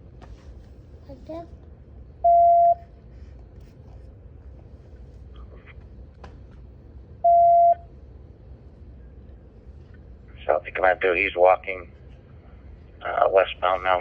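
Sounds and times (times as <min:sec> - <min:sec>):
loud steady beep: 0:02.2 - 0:02.8, 0:07.2 - 0:07.9
faint radio hiss: 0:08.8 - 0:14.0.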